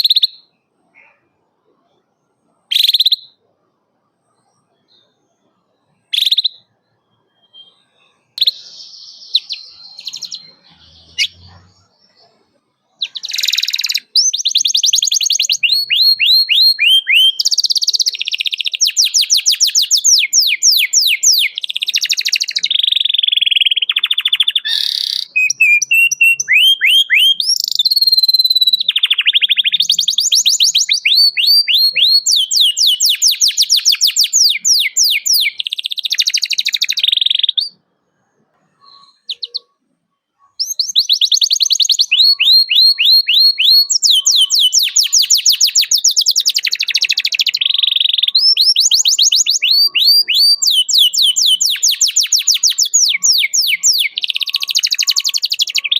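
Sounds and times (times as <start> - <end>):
canary singing trills: 0.0 - 55.9.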